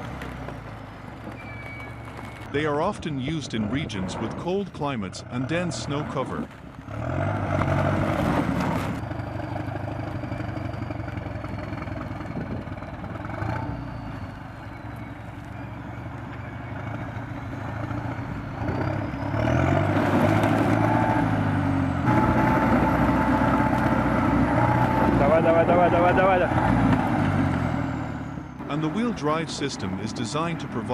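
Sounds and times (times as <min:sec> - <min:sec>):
vehicle engine revving under load: 0:05.3 - 0:29.2.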